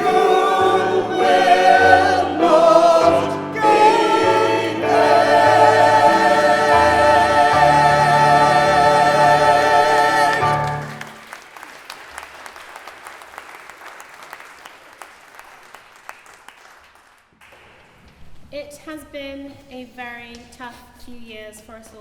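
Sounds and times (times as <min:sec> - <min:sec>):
choir singing: 0:00.0 - 0:11.2
low accompaniment: 0:00.0 - 0:11.2
audience applause: 0:03.8 - 0:17.2.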